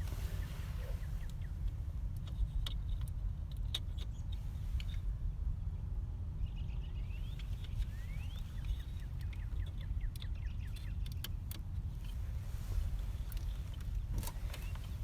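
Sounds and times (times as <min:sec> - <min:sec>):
bird singing: 0:06.4 - 0:11.4.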